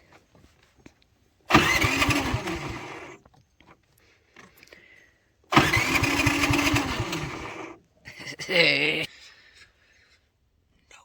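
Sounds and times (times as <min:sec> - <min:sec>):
generator engine cranking: 0:01.5 - 0:03.3, 0:05.5 - 0:07.8.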